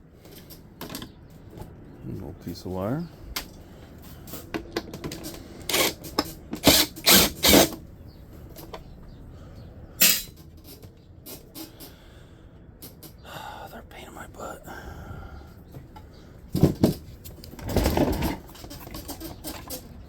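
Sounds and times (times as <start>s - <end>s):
metal parts scraping rattles: 3.5s - 7.8s, 10.0s - 11.9s, 16.5s - 20.0s
tools clicking and clinking: 10.0s - 11.9s.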